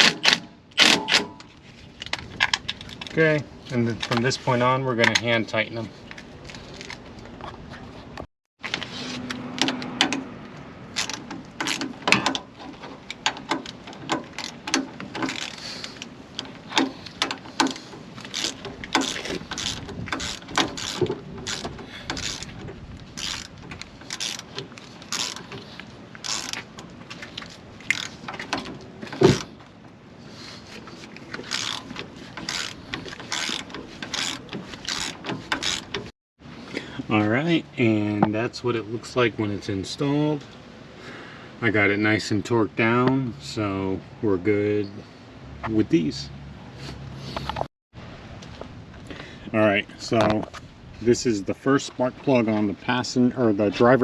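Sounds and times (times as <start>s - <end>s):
ratchet wrench clicking: 17.6s - 22.5s, 23.2s - 24.5s, 25.1s - 25.4s, 26.2s - 26.6s, 31.4s - 36.0s.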